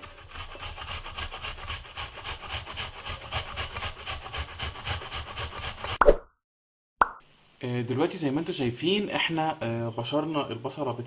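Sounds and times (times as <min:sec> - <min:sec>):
onion grated on hand grater: 0:00.0 - 0:06.0.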